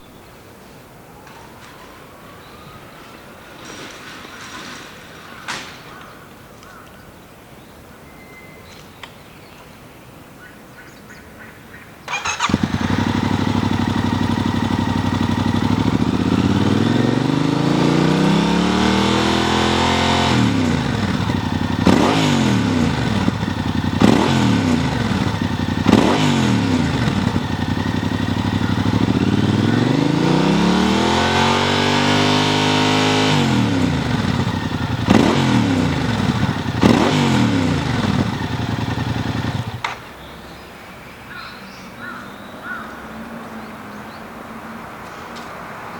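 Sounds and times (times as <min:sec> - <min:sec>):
motorcycle engine idling and revving: 0:12.1 - 0:40.2.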